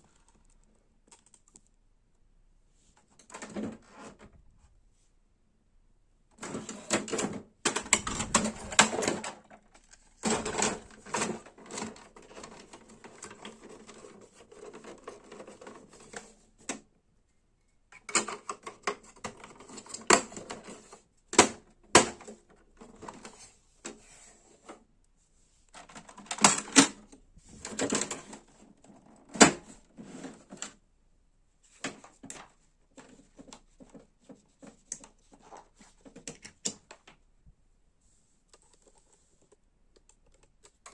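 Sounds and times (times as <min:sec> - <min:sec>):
printer clicking and clattering: 0:06.4 - 0:09.6, 0:10.2 - 0:13.9.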